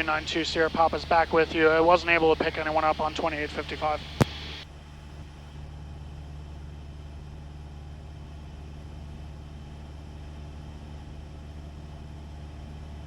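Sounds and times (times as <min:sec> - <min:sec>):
airplane engine droning in cabin: 0:00.0 - 0:13.0.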